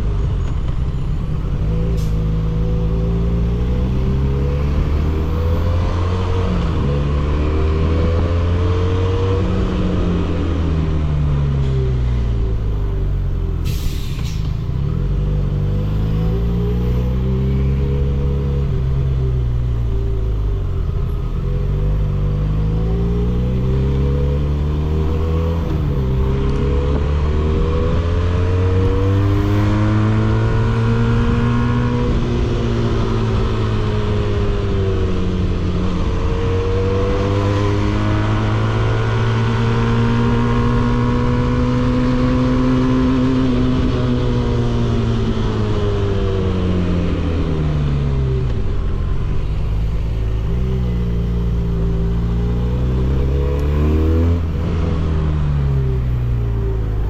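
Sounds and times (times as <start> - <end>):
motorcycle engine revving: 14.7 - 57.0.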